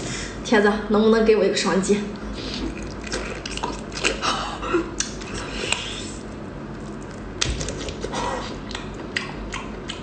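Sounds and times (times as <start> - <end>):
chewing hard seafood shells: 2.5 - 10.0.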